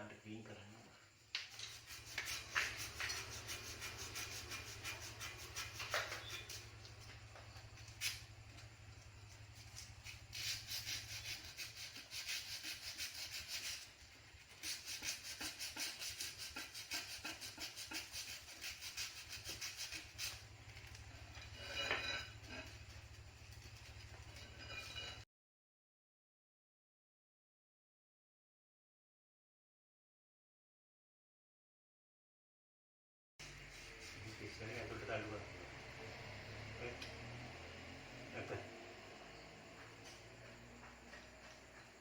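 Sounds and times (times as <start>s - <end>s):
scrubbing on metal part: 1.4s - 25.2s.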